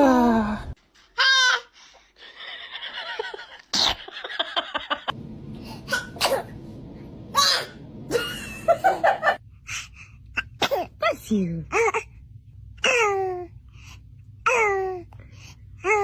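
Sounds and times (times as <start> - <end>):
baby sneezing: 5.9 - 6.5, 10.4 - 11.0.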